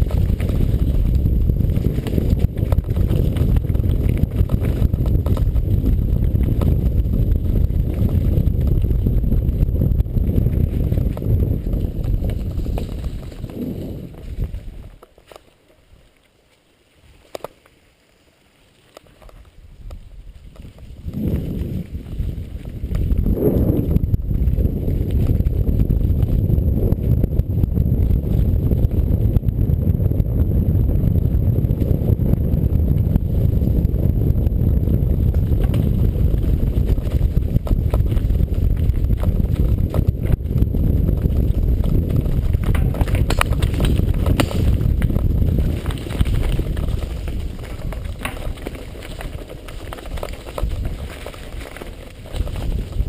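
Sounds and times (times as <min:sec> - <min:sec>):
camera rumbling and rattling: 0:00.0 - 0:15.4, 0:19.0 - 0:53.0.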